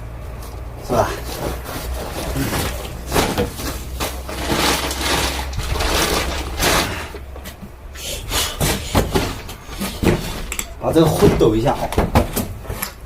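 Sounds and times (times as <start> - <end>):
camping gear rustling: 0.3 - 7.6.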